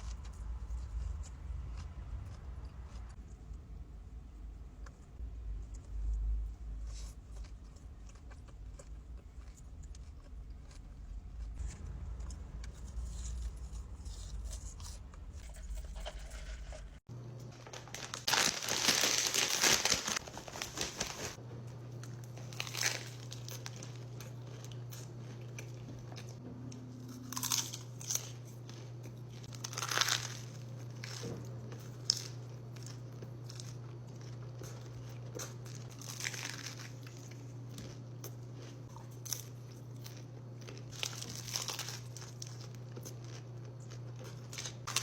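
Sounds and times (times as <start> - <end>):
steady low hum: 0.0 - 45.0
crunchy bites and chewing: 5.6 - 16.8, 21.7 - 45.0
food packaging crinkling: 13.0 - 26.2, 27.3 - 45.0.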